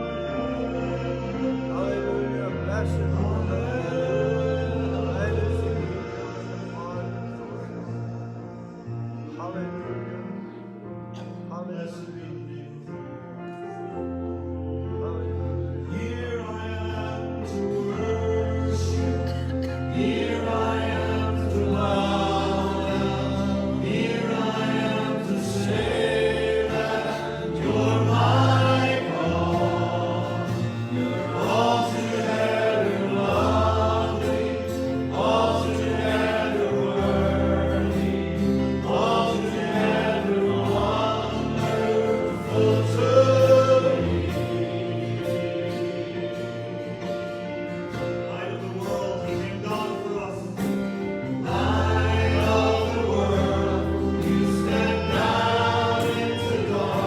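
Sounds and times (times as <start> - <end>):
bass: 0.0 - 57.0
choir singing gospel song: 0.0 - 57.0
instrumental accompaniment: 12.5 - 57.0.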